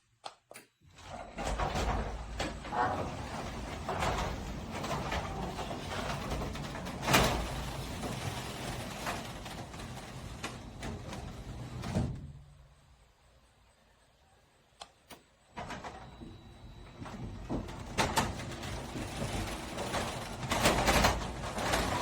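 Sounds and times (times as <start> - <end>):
garage door motor hum: 0.8 - 13.1, 15.5 - 22.0
door rattle: 1.0 - 12.4, 17.0 - 22.0.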